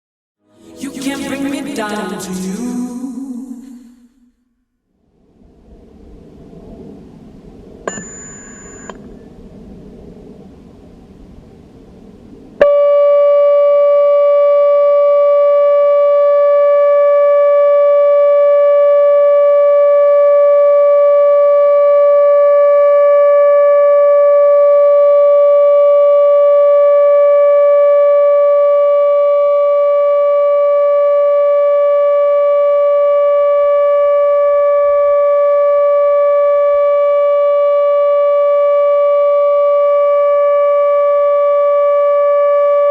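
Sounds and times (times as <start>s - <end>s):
electronic siren steady tone: 7.9s - 9.4s, 12.6s - 42.9s.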